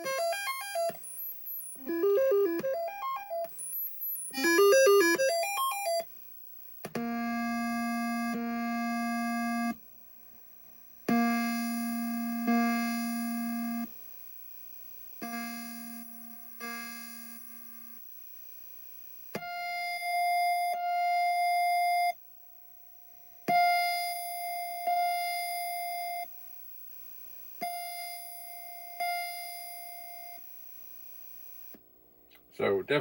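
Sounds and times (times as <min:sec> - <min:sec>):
stepped electronic notes: 0:00.0 - 0:06.0
long buzzy electronic tones: 0:00.0 - 0:06.1, 0:06.8 - 0:09.8, 0:10.8 - 0:31.8.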